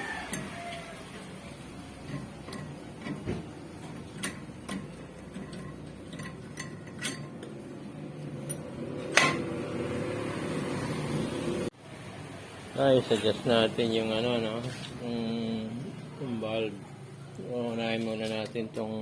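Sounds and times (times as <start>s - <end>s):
metal tools clinking: 3.8s - 7.5s, 8.4s - 9.4s.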